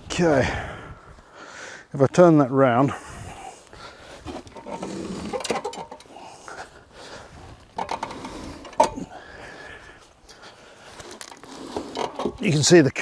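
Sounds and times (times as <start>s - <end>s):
scraping and rattling: 4.2s - 6.3s, 7.5s - 9.1s, 10.9s - 12.7s.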